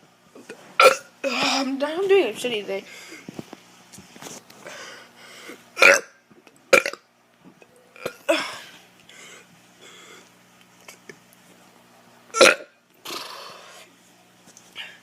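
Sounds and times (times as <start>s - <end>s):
boy burping: 0.8s - 1.6s, 5.8s - 7.0s, 8.0s - 8.7s, 12.4s - 13.6s.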